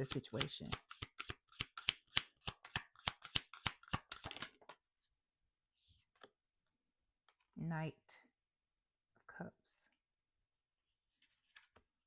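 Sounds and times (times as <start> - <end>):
cards shuffling clicks: 0.4 - 4.6
soft rustle of cards: 10.8 - 12.0.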